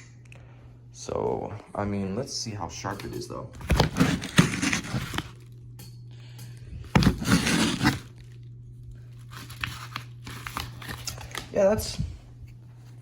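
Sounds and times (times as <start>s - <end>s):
knife blade tearing cut: 3.7s - 5.3s, 7.0s - 8.1s.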